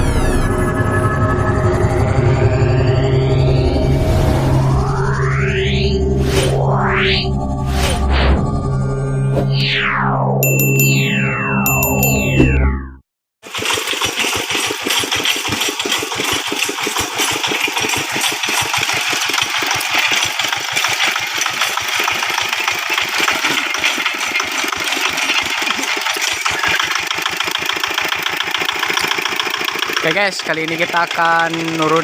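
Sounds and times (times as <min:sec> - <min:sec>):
diesel engine chugging: 0:13.4 - 0:32.0.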